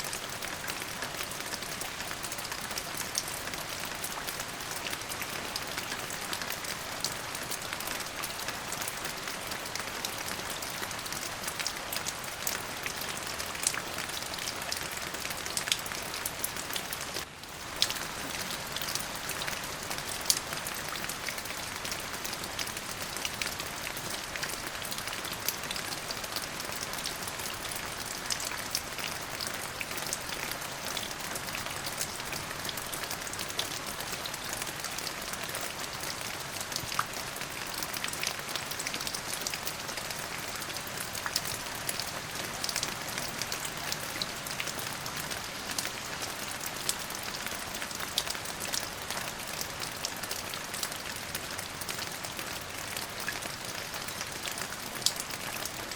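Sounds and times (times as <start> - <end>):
raindrops ticking on a surface: 0.0 - 55.9
steady rain: 0.0 - 55.9.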